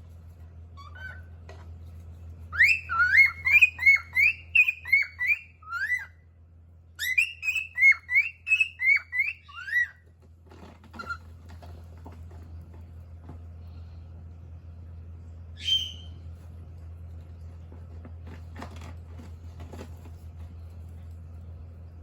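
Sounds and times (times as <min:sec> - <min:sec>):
steady low hum: 0:00.0 - 0:22.0
cockatiel whistling: 0:02.5 - 0:06.1, 0:07.0 - 0:10.0, 0:15.6 - 0:16.2
cockatiel call: 0:02.6 - 0:06.1, 0:07.0 - 0:10.0, 0:15.6 - 0:16.2.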